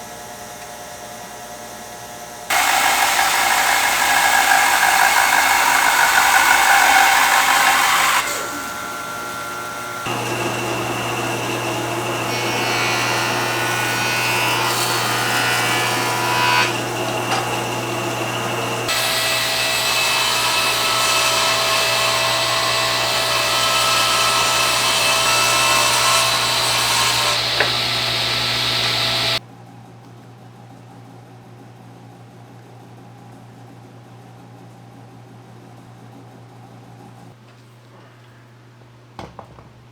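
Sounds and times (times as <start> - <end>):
sandpaper rubbing spinning wood: 2.5 - 8.2, 24.1 - 29.4
lathe motor hum: 2.5 - 29.4.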